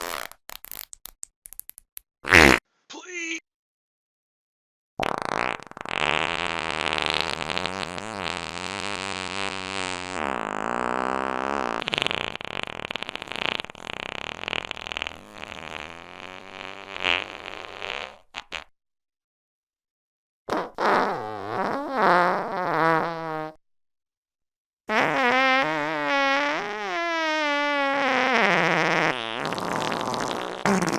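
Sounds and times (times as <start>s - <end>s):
fart sound effect: 0.0s - 1.1s, 2.2s - 2.6s, 5.0s - 18.7s, 20.5s - 23.6s, 24.9s - 30.9s.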